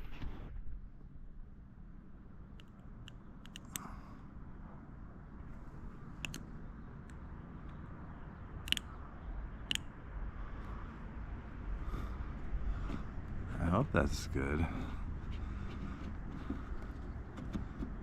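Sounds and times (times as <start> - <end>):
low background rumble: 0.0 - 18.0.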